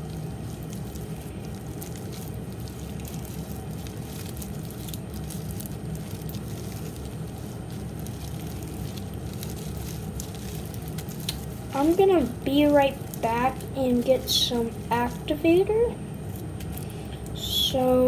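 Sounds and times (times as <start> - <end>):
foam beads clicking and crackling: 0.0 - 18.0
low background hum: 0.0 - 18.0
slime squishing by hand: 0.0 - 18.0.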